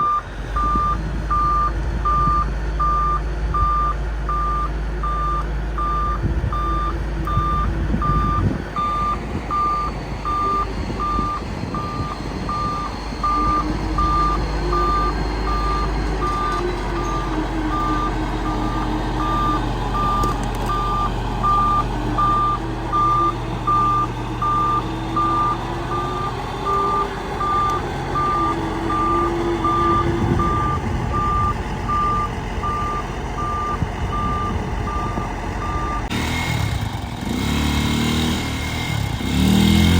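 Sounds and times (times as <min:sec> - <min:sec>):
reversing alarm beeps: 0:00.0 - 0:36.1
bulldozer diesel engine: 0:00.0 - 0:39.9.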